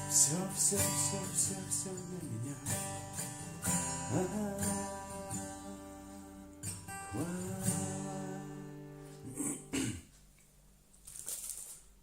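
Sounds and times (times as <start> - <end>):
strummed chords ringing out: 0.0 - 9.3.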